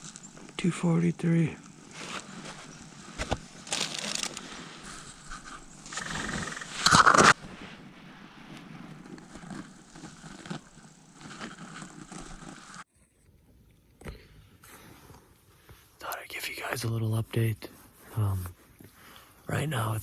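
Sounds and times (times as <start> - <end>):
clothing rustling and scraping: 1.7 - 6.2, 6.8 - 12.9.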